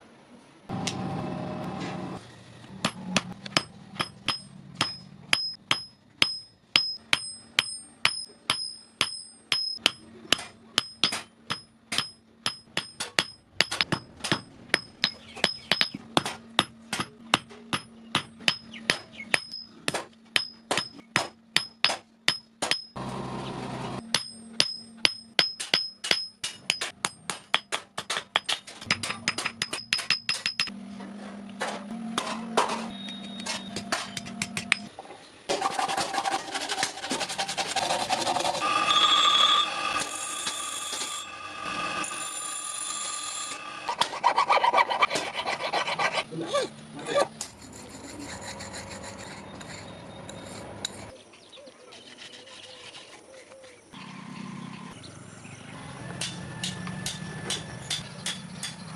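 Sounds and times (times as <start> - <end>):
hammer striking steel on anvil: 2.8 - 23.0, 24.0 - 30.8, 31.6 - 34.9, 56.2 - 58.9.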